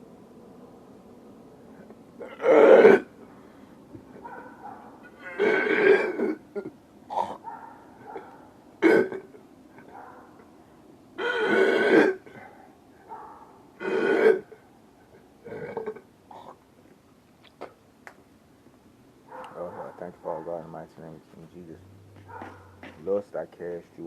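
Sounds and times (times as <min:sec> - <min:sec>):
man belching: 0:02.2 - 0:03.1, 0:05.2 - 0:07.4, 0:08.8 - 0:09.4, 0:11.2 - 0:12.3, 0:13.8 - 0:14.5, 0:15.4 - 0:16.6.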